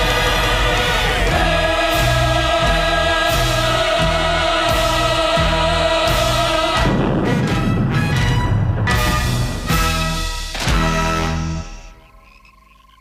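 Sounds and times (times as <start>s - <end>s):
chorus holding sustained chord: 0.0s - 7.1s
pulsing orchestral bass: 0.0s - 11.7s.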